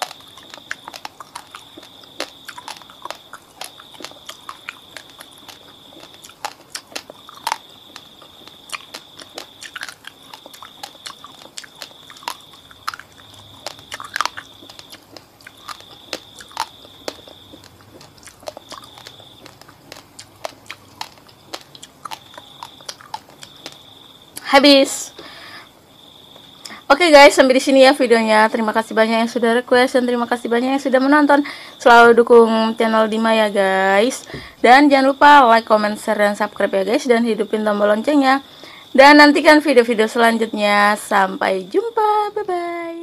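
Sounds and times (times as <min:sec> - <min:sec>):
chewing crunchy rice: 0:00.0 - 0:24.4.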